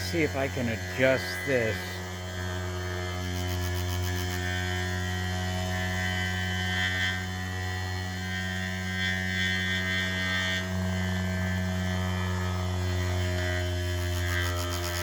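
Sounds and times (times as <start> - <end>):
high whine: 0.0 - 4.3
motor rotor humming: 0.0 - 15.0.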